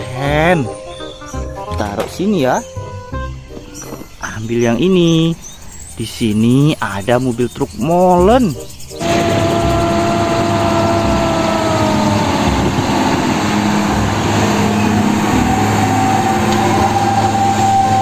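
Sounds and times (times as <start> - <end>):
higher whine: 9.0 - 18.0
truck engine rumbling: 9.0 - 18.0
whining tones sagging in pitch: 9.0 - 18.0.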